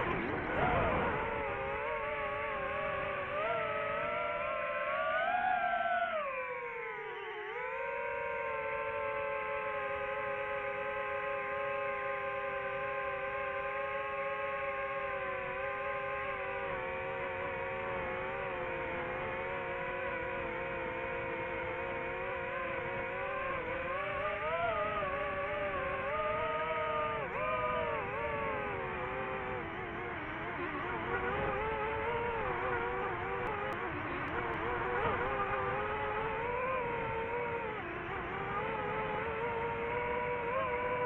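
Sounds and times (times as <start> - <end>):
vehicle engine running: 16.8 - 41.0.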